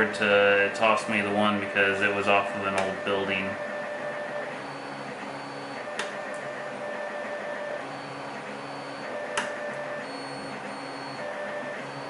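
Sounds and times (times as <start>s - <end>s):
printer motor running: 0.0s - 12.0s
sharp clicks: 9.3s - 9.7s.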